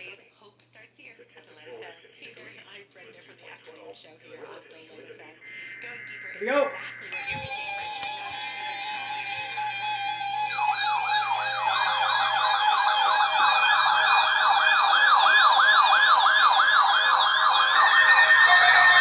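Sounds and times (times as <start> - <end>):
electronic siren yelping: 5.4 - 19.0
steady high tone: 5.4 - 19.0.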